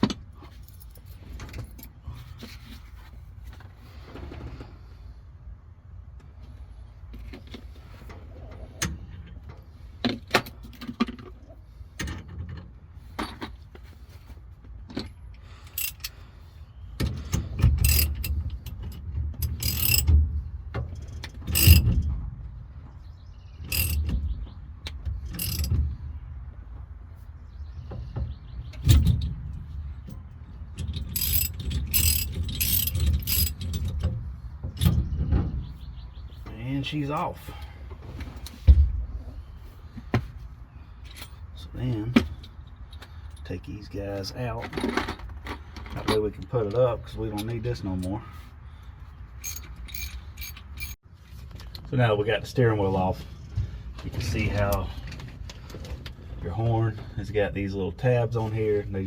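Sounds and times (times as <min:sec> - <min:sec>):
metal tools clicking and clanking: 0:15.0 - 0:16.2, 0:17.0 - 0:20.2, 0:20.9 - 0:22.0, 0:23.6 - 0:24.2, 0:25.3 - 0:25.8, 0:30.8 - 0:34.2, 0:49.4 - 0:51.0
ratchet clicks: 0:15.7 - 0:16.1, 0:17.8 - 0:20.1, 0:21.5 - 0:21.9, 0:23.7 - 0:24.1, 0:25.4 - 0:25.7, 0:30.8 - 0:33.9, 0:49.4 - 0:51.0.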